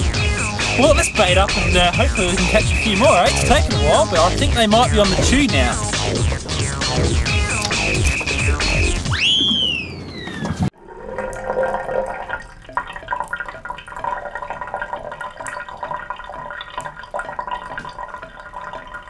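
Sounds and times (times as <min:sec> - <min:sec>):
water sloshing and dripping: 0:10.7 - 0:19.0.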